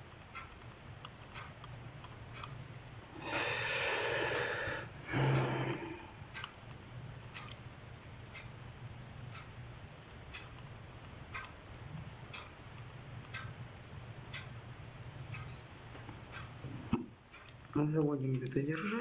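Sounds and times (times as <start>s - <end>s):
person sighing: 3.2s - 6.1s
person exhaling heavily: 3.2s - 6.2s.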